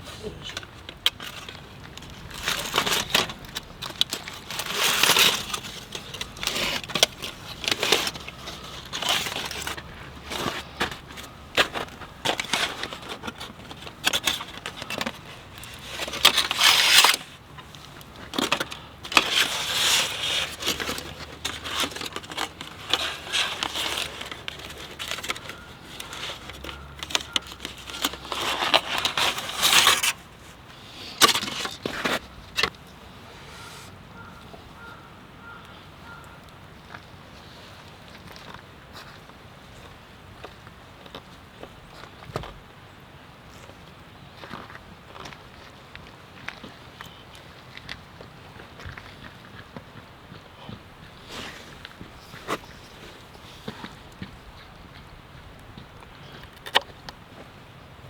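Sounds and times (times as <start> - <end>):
gear being handled and moved: 0.2 - 30.3.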